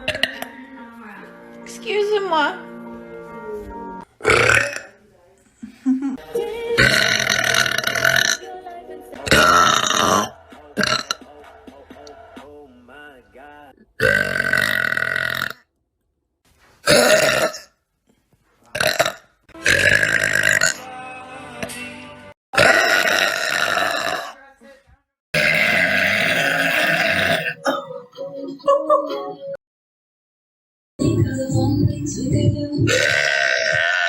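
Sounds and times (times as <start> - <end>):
loud human belches: 0.0 - 0.5, 4.2 - 4.9, 6.8 - 8.5, 9.2 - 11.2, 14.0 - 15.7, 16.8 - 17.8, 18.7 - 20.8, 22.6 - 24.4, 25.4 - 27.9, 32.9 - 34.0.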